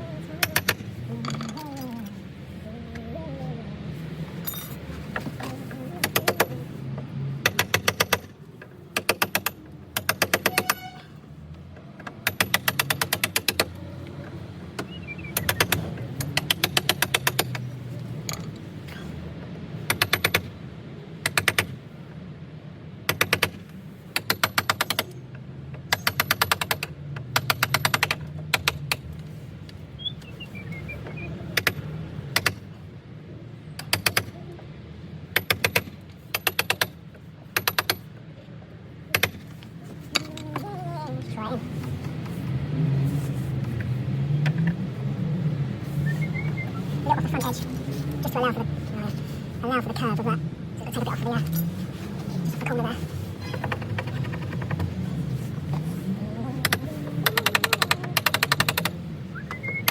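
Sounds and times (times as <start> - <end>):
hammer striking chisel: 7.4 - 8.3, 9.0 - 11.0, 12.0 - 13.8, 25.9 - 29.0, 35.4 - 37.0, 37.6 - 38.1, 39.1 - 39.6.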